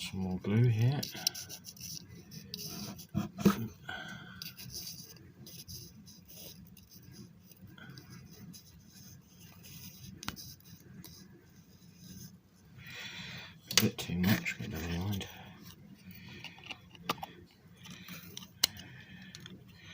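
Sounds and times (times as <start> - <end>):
sharp clicks of plastic parts: 16.3 - 19.6.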